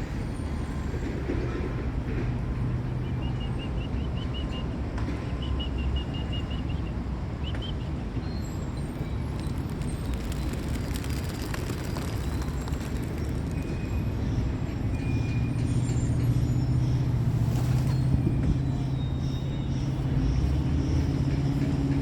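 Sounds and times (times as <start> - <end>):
traffic rumble: 0.0 - 22.0
large vehicle engine humming: 6.6 - 22.0.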